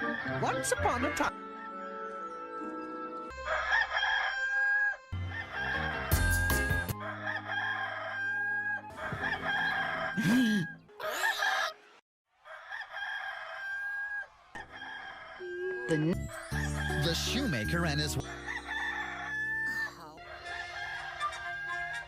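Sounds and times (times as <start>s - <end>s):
rooster crowing: 3.3s - 11.8s, 12.4s - 15.8s, 18.3s - 22.0s.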